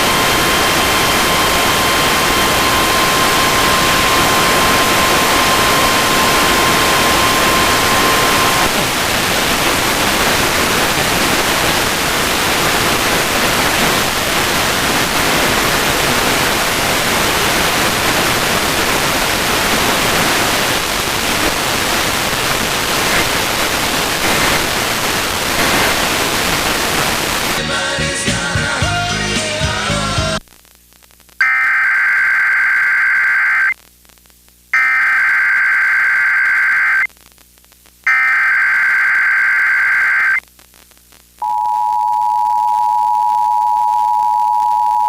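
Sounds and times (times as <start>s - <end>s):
steady tone: 0.0s - 11.6s
radio static hiss: 0.0s - 27.7s, 30.2s - 41.6s.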